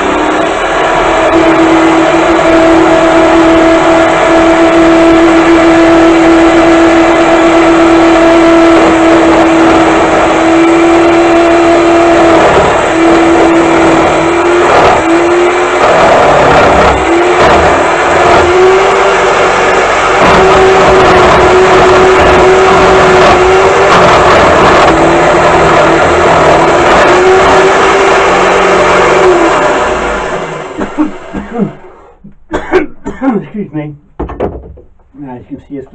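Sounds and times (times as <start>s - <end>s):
electric drill motor whining: 0.0s - 31.9s
wood scraping on lathe: 0.0s - 31.9s.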